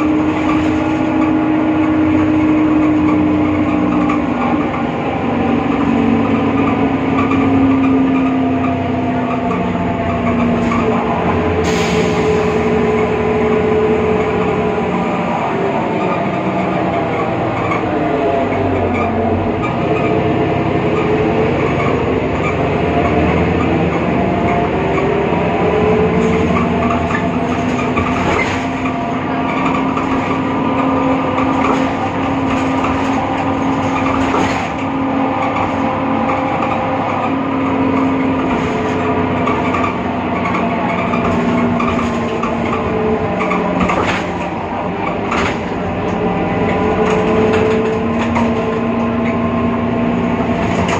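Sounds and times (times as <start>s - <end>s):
bus diesel engine running: 0.0s - 50.9s
knocks and rattles: 26.1s - 49.4s.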